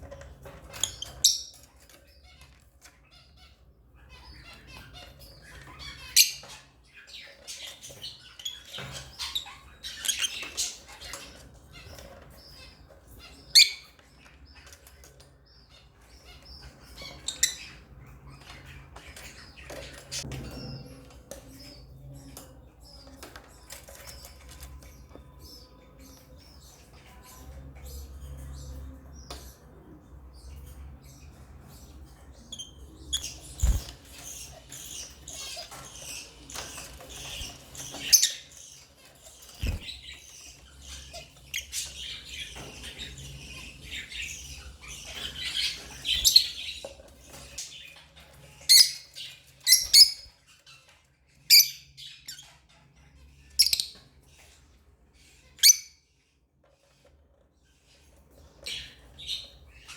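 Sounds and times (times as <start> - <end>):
lovebirds chirping: 0.0 - 56.3, 57.6 - 59.9.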